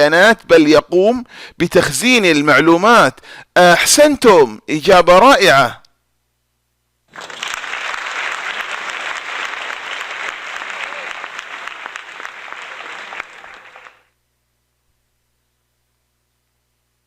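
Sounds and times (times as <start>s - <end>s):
crowd applauding: 7.1s - 14.1s.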